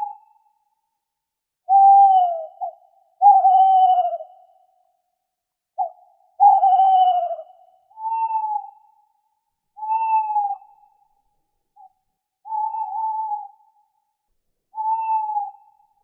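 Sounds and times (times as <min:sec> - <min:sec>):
owl hooting: 0:01.7 - 0:04.5, 0:05.8 - 0:08.8, 0:09.8 - 0:10.8, 0:12.4 - 0:13.7, 0:14.7 - 0:15.9.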